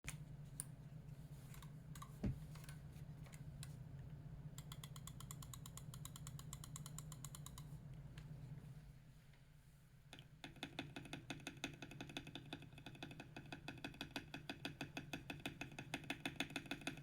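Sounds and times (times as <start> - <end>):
steady low hum: 0.1 - 10.4.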